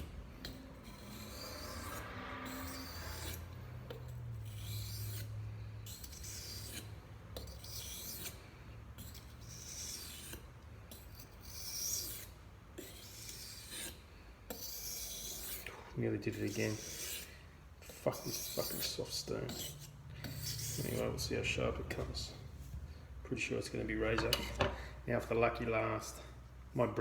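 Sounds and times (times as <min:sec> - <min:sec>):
knife scraping sharpening stone: 0:00.0 - 0:08.4, 0:09.0 - 0:21.2, 0:24.1 - 0:24.6.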